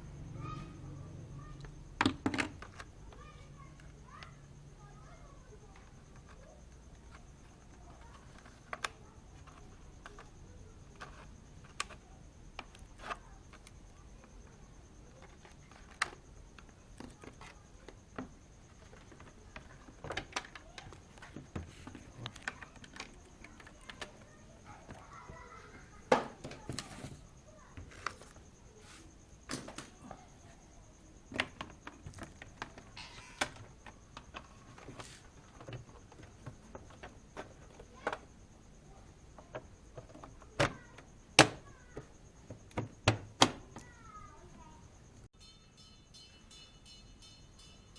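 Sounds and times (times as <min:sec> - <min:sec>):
faint high whine: 0:43.8 - 0:47.9.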